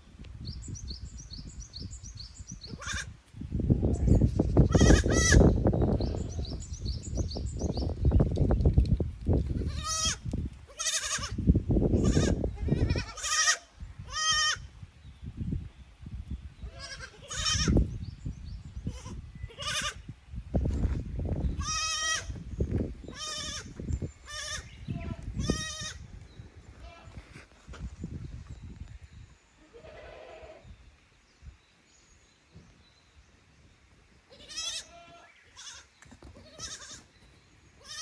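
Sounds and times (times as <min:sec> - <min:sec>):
young goats bleating: 0:02.6 - 0:06.8, 0:09.5 - 0:14.7, 0:16.6 - 0:17.9, 0:18.8 - 0:20.1, 0:21.5 - 0:26.1, 0:26.7 - 0:27.5, 0:29.6 - 0:30.6, 0:34.3 - 0:37.2, 0:37.8 - 0:38.0.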